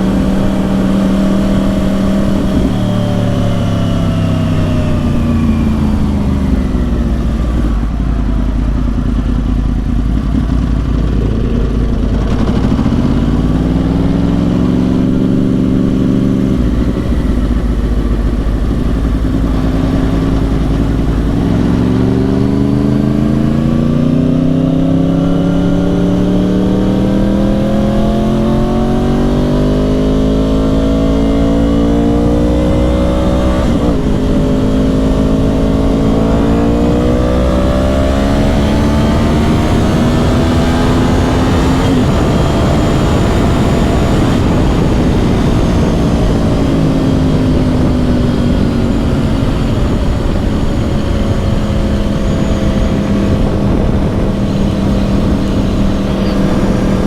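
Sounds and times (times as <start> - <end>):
motorcycle engine: 0.0 - 57.0
wind and road noise: 0.0 - 57.0.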